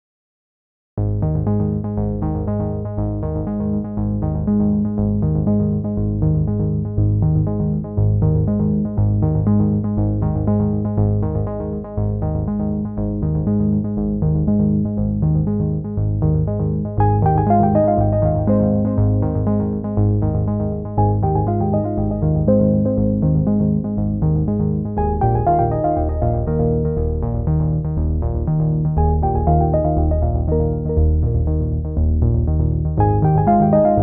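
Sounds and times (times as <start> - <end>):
synthesizer music with quick beat: 33.0 - 34.0.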